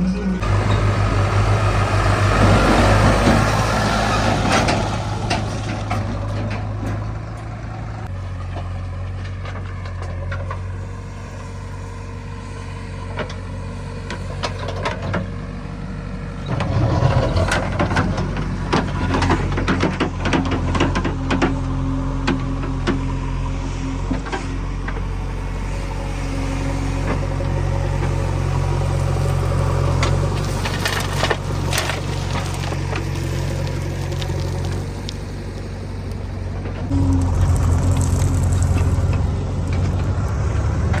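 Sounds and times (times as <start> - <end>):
heavy diesel engine running: 0.0 - 41.0
knocks and clanks: 0.4 - 10.6, 16.4 - 23.2.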